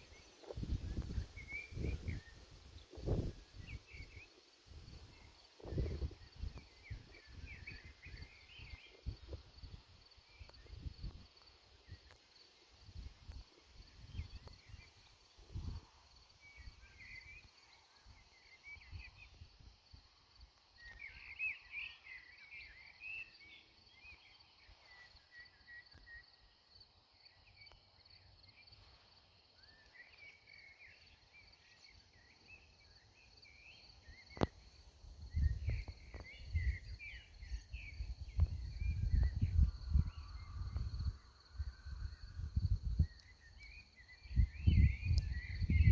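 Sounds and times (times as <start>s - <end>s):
wind on microphone: 0.0s - 11.3s, 12.9s - 14.8s, 35.2s - 43.2s, 44.2s - 45.9s
insect chirping: 0.0s - 45.9s
insect trill: 19.8s - 45.9s.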